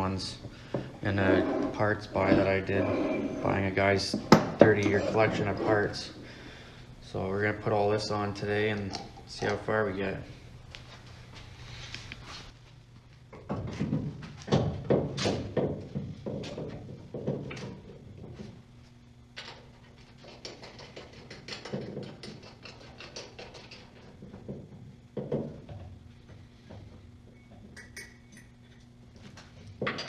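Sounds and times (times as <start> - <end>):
tools knocking and clanking: 3.9 - 5.8, 20.3 - 28.5, 29.8 - 30.0.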